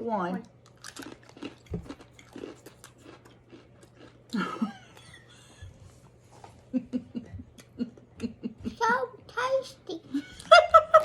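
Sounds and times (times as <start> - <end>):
biscuit crunching: 0.6 - 4.4.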